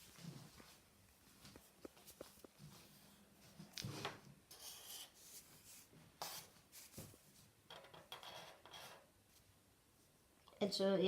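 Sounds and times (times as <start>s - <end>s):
marker scratching on paper: 4.5s - 5.4s, 6.2s - 6.9s.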